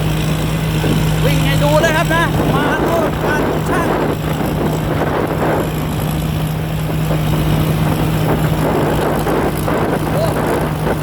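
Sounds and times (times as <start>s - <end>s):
combine harvester engine hum: 0.0s - 11.0s
machine clatter and rush: 0.0s - 11.0s.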